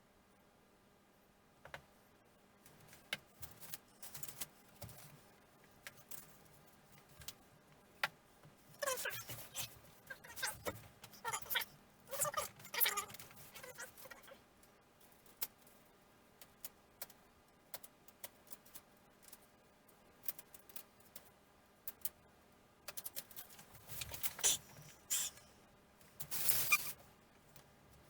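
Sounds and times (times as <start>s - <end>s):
small clicks and taps of tools: 1.6s - 1.9s.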